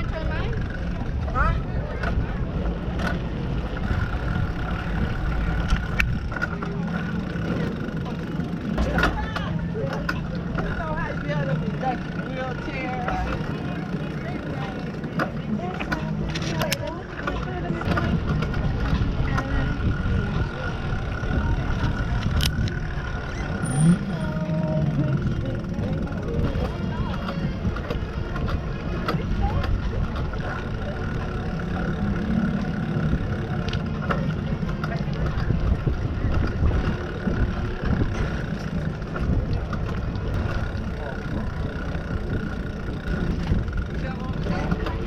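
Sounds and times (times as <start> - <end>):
bicycle rolling noise: 0.0 - 45.0
wind rumble: 17.7 - 45.0.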